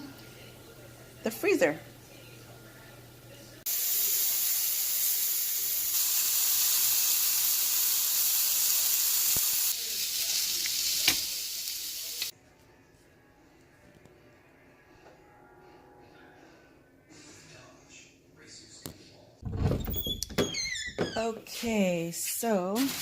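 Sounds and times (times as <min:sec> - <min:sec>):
food sizzling in frying pan: 0:03.7 - 0:12.3.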